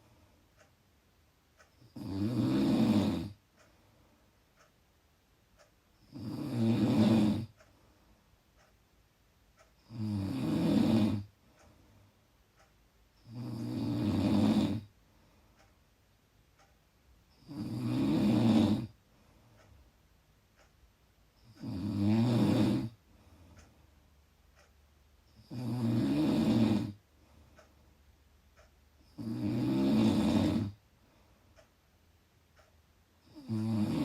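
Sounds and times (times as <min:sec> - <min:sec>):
person snoring loudly: 0:01.9 - 0:03.4, 0:06.1 - 0:07.5, 0:09.9 - 0:11.3, 0:13.3 - 0:14.9, 0:17.4 - 0:18.9, 0:21.5 - 0:23.0, 0:25.4 - 0:27.0, 0:29.2 - 0:30.8, 0:33.2 - 0:34.0.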